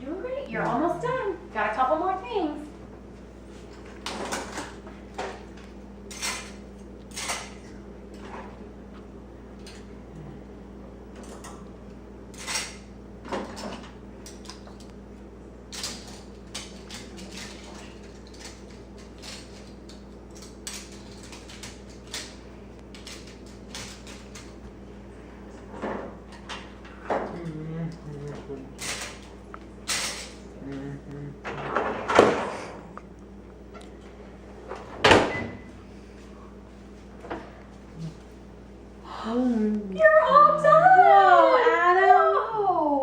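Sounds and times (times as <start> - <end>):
steady low hum: 0.0 - 43.0
metal cutlery clinking: 15.7 - 22.3.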